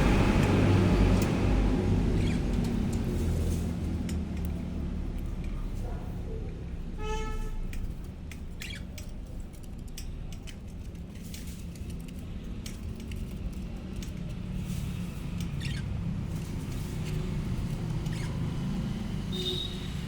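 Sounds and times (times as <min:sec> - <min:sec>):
budgies scratching and pecking: 0:00.0 - 0:05.8, 0:07.7 - 0:19.7
steady low rumble: 0:00.0 - 0:07.0.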